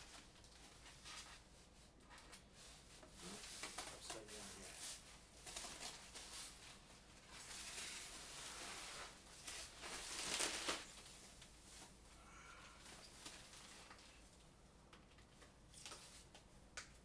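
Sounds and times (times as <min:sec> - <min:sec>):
packaging rustling and tearing: 0:07.3 - 0:11.6.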